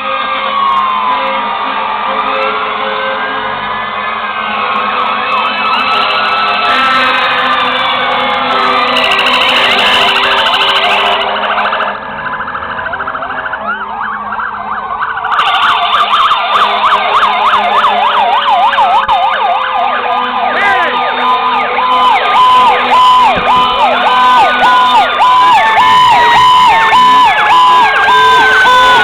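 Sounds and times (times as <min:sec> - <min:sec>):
fire truck sirens wailing and yelping: 0:00.0 - 0:29.0
hi-lo two-tone siren: 0:04.3 - 0:29.0
low siren tone falling in pitch: 0:08.0 - 0:29.0.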